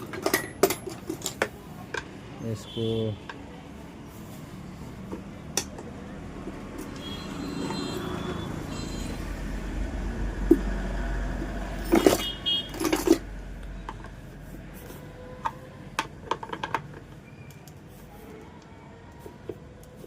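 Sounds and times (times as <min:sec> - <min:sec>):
metal parts clinking: 0:00.0 - 0:01.6, 0:11.8 - 0:13.4.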